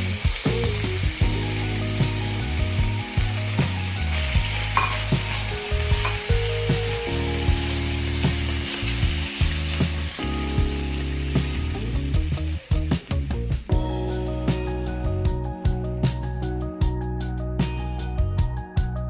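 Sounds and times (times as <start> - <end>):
food sizzling in a pan: 0.0 - 13.7
background music with beat: 0.0 - 19.0.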